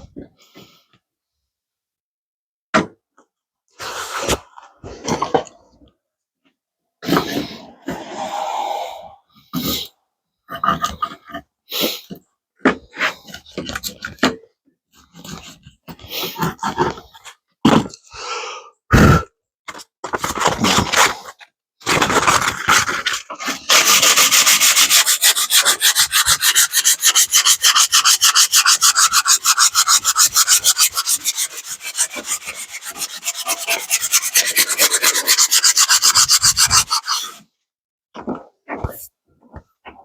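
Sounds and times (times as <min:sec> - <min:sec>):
short scrapes and knocks: 0:21.9 - 0:37.4
sandpaper rubbing on wood: 0:23.7 - 0:37.4.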